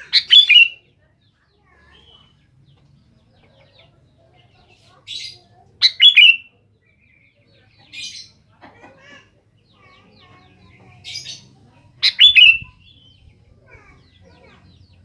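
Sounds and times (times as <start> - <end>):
raspy bird notes and chirps: 0.0 - 0.8, 5.2 - 6.5, 11.0 - 13.3.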